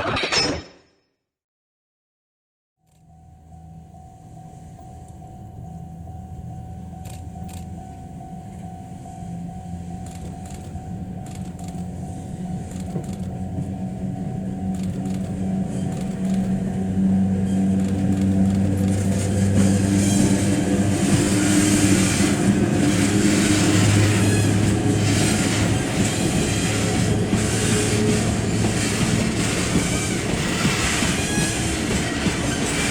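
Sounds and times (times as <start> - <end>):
wheels clicking on track: 12.6 - 32.9.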